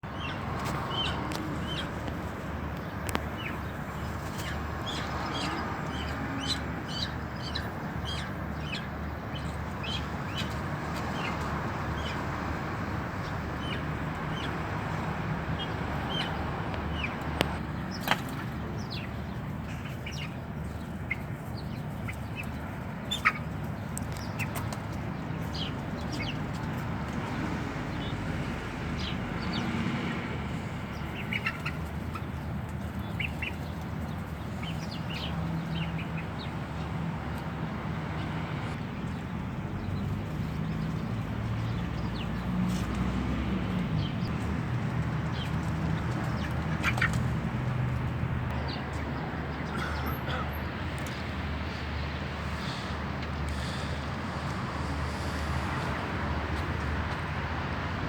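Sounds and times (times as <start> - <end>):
birds chirping: 0.0 - 37.5, 38.1 - 57.2.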